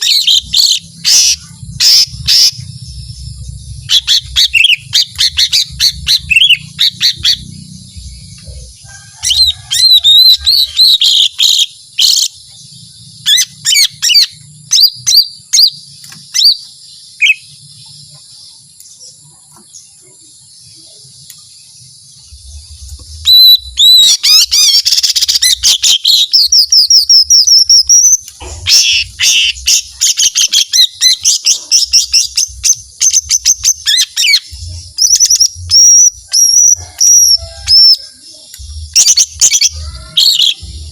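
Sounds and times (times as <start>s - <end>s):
small bird singing chirps: 0.0s - 40.9s.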